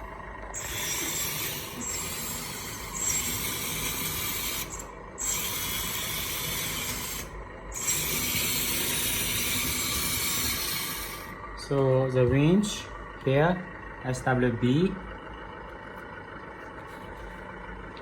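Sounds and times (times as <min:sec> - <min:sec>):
motors whirring: 0:00.0 - 0:11.4.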